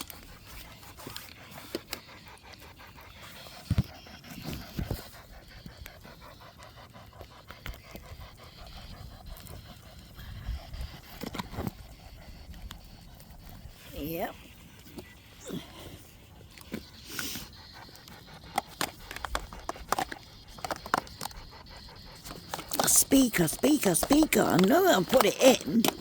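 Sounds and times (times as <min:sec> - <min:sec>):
chopping radio static: 0:22.8 - 0:26.0.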